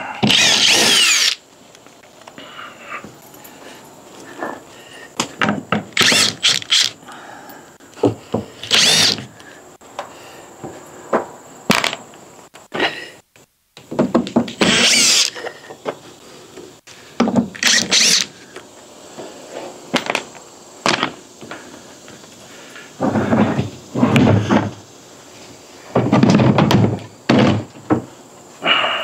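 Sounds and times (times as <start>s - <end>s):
dull wooden thunks: 5.2s - 6.0s, 8.0s - 9.3s, 13.8s - 14.8s, 17.2s - 17.6s, 23.0s - 24.8s, 25.9s - 28.1s
sharp wooden knocks: 13.8s - 14.9s, 17.2s - 17.6s, 25.9s - 28.1s.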